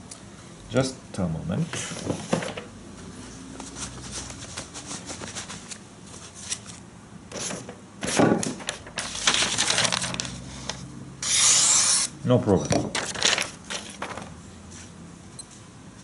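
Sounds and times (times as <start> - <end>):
rustling and scraping: 1.7 - 6.8.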